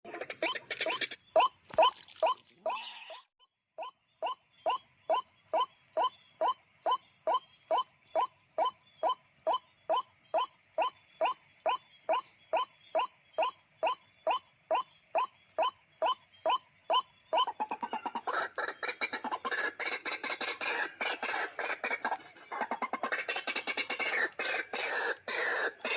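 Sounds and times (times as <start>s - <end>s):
fast jumbled bird chatter: 0.1s - 3.2s, 4.2s - 25.9s
waterhen calling: 0.1s - 3.3s, 16.0s - 25.9s.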